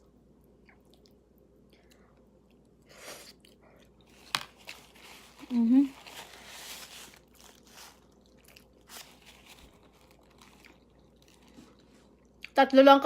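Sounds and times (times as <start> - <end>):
person chewing: 0.0 - 4.2, 7.1 - 12.6.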